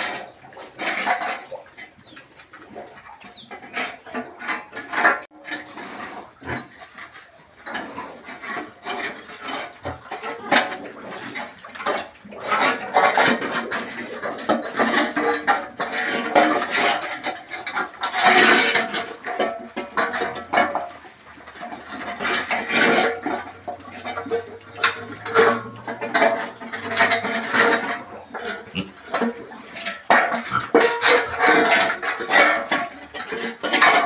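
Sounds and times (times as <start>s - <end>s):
pigs grunting and snuffling: 0.0s - 34.0s
irregular knocks and clatter: 7.6s - 34.0s.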